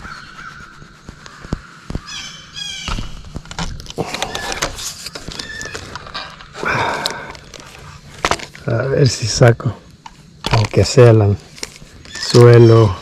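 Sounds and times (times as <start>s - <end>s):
crow cawing: 0.0s - 3.0s
rustling: 0.0s - 8.8s.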